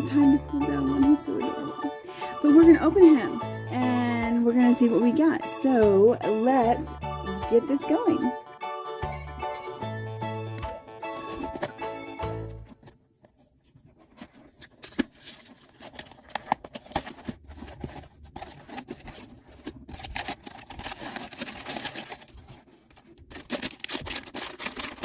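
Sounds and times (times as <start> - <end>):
cardboard packaging tearing: 10.6 - 25.0
plastic bag crinkling: 10.6 - 25.0.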